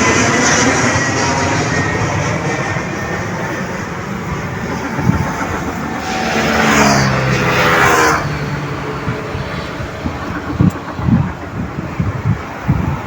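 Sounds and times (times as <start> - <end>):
falling pitch sweep of passing vehicle: 0.0 - 10.9
loud steady engine noise: 0.0 - 13.0
steady tones: 0.0 - 13.0.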